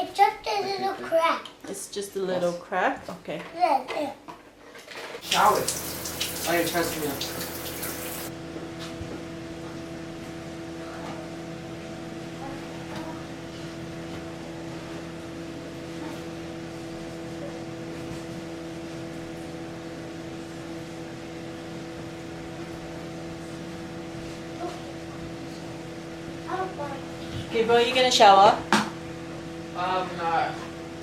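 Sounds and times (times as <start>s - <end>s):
electric motor hum: 5.2s - 8.4s.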